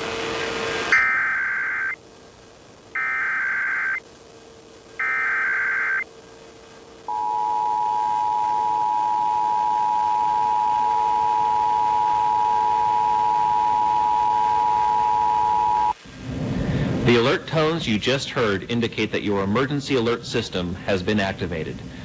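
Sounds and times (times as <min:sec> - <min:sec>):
data bursts: 0:00.9 - 0:02.0, 0:02.9 - 0:04.0, 0:05.0 - 0:06.1, 0:07.1 - 0:16.0
two-tone attention signal: 0:00.9 - 0:02.0, 0:03.0 - 0:04.0, 0:05.0 - 0:06.0, 0:07.1 - 0:16.0.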